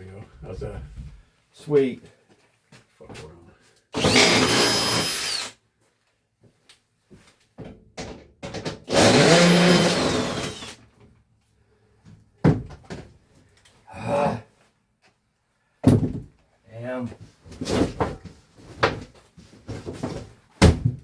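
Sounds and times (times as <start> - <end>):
power drill running: 4.0 - 5.6, 8.9 - 10.8.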